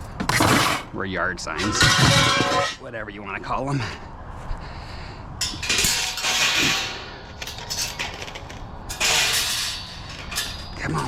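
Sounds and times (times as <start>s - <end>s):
metal scrap clattering: 0.2s - 0.9s, 1.5s - 2.9s, 5.4s - 11.0s.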